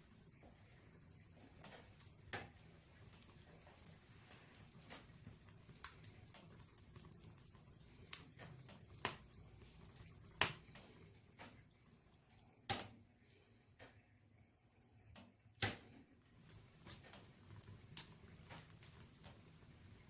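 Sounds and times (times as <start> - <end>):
flames hissing: 0.0 - 12.6, 16.2 - 20.0
logs crackling: 1.4 - 11.8, 16.3 - 20.0
sharp fire pops: 8.1 - 9.3, 9.9 - 10.8, 16.4 - 19.4.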